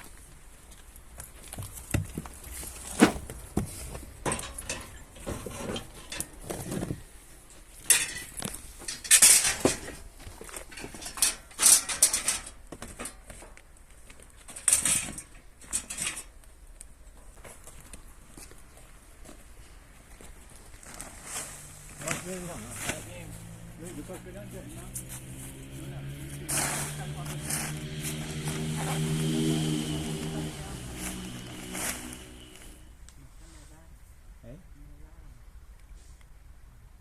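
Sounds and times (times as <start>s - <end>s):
rustling: 2.7s - 3.5s.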